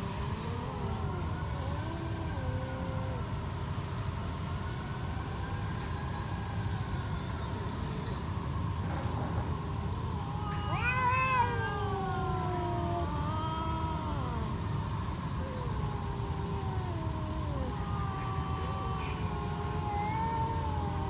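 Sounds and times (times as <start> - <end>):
cats yowling: 0.0 - 4.8, 9.0 - 21.0.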